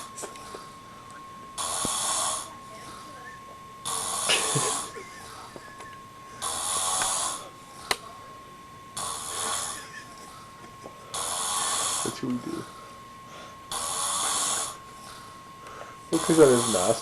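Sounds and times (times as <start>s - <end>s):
faint steady whine: 0.0s - 17.0s
man snoring: 1.6s - 2.5s, 3.8s - 5.8s, 6.4s - 7.5s, 9.0s - 10.4s, 11.1s - 12.8s, 13.7s - 15.4s, 16.1s - 17.0s.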